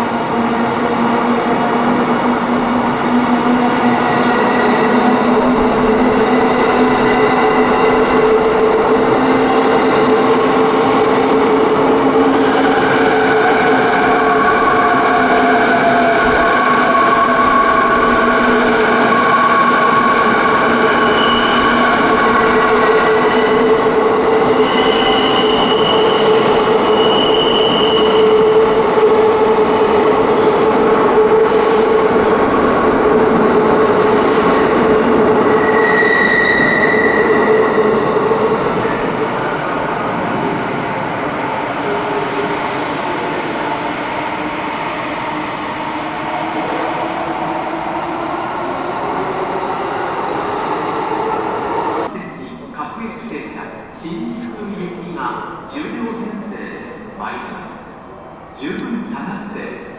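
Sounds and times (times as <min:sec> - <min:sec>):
electric train rumbling on rails: 0:00.0 - 0:59.9
high squealing of train wheels: 0:02.6 - 0:52.1.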